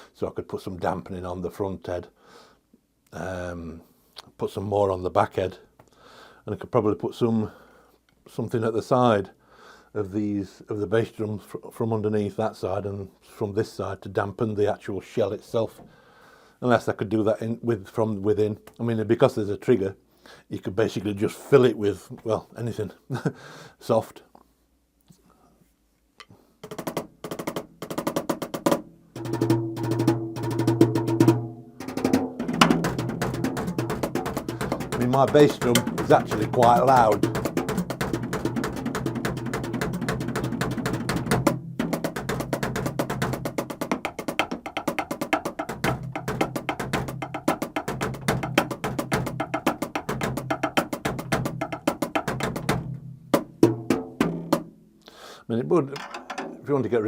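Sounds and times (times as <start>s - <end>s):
drum stick strokes on mesh heads: 29.2s - 40.6s
lower drum ringing: 29.2s - 42.6s.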